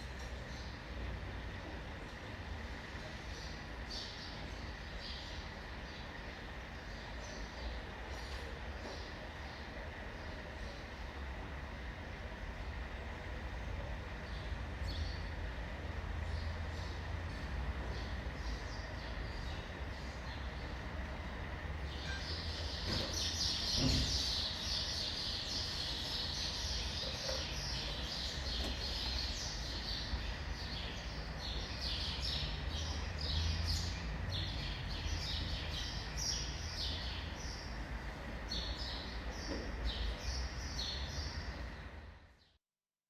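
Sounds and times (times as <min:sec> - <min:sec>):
low city traffic rumble: 0:00.0 - 0:42.4
birds chirping: 0:17.8 - 0:37.8.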